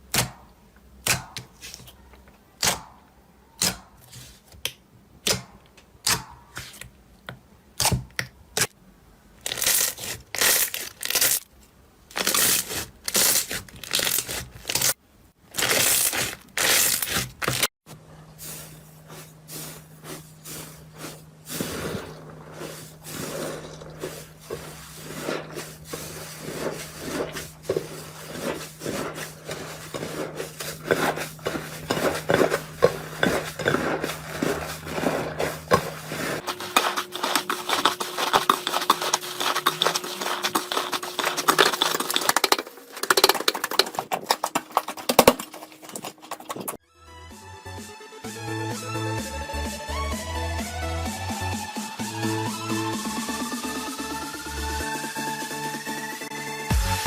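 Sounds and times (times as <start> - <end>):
slime squishing and crackling: 9.5 - 11.4, 12.1 - 17.7, 21.0 - 46.8.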